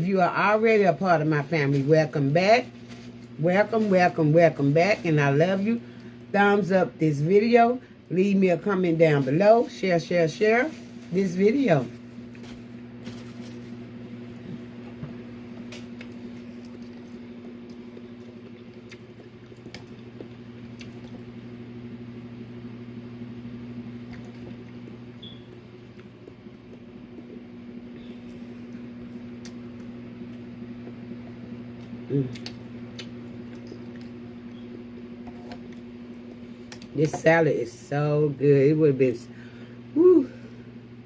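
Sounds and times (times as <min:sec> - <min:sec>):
low electrical hum: 0:00.0 - 0:41.0
soft chewing and food clicks: 0:14.3 - 0:21.4, 0:24.0 - 0:36.9.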